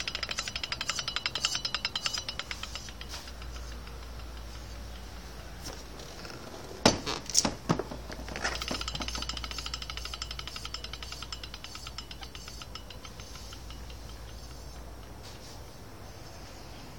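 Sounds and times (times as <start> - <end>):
wheel ticking as it turns: 0.0 - 16.7.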